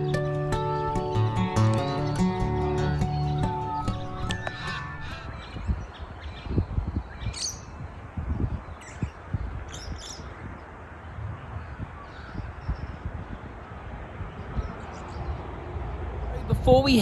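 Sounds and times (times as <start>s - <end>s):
birds calling: 0.0s - 6.5s.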